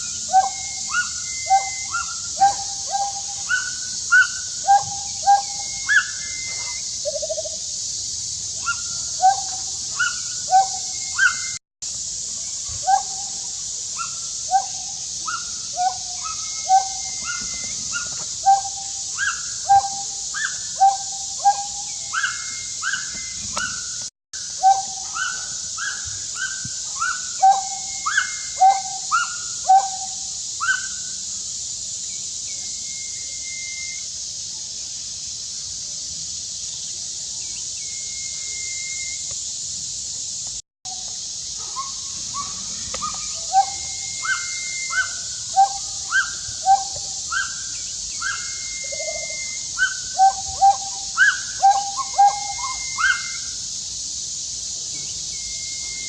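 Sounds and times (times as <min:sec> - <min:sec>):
held whistles: 0:00.0 - 0:07.1, 0:08.6 - 0:11.6, 0:15.3 - 0:24.0, 0:32.5 - 0:34.2, 0:37.7 - 0:39.4, 0:41.7 - 0:53.6, 0:54.9 - 0:56.0
young monkey crying calls: 0:00.0 - 0:07.5, 0:24.6 - 0:31.0, 0:41.8 - 0:53.5
steady high hiss: 0:00.0 - 0:56.0.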